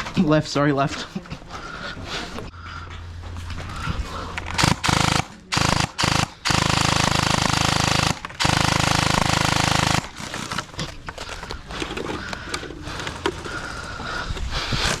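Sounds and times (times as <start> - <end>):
gel blaster full-auto bursts: 4.6 - 10.6
rustling and scraping: 10.2 - 15.0.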